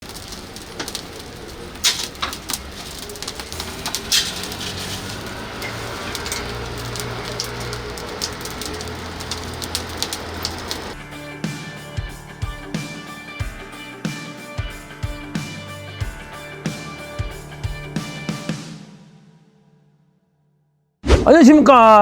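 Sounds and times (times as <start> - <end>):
wood fire crackling and popping: 0.0 - 11.0.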